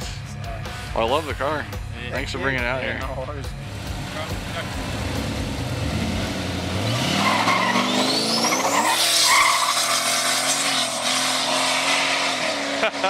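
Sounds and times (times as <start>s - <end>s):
car engine revving hard: 3.6s - 13.0s
tyre squeal: 7.2s - 12.3s.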